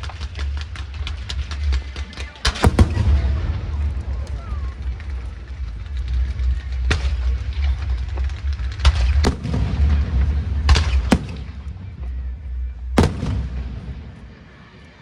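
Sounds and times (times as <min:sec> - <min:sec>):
fireworks bursting: 0:00.0 - 0:14.8
low rumble: 0:02.6 - 0:14.2.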